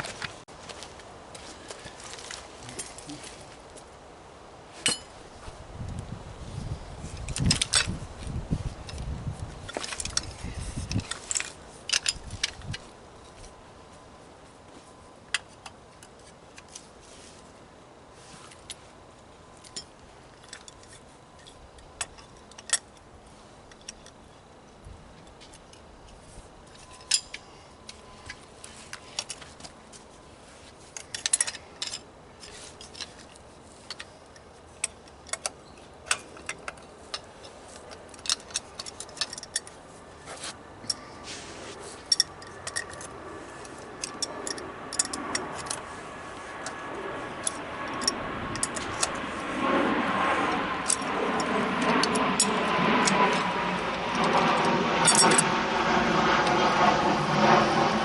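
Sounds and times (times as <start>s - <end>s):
metallic clicks of hand tools: 42.1s - 45.8s.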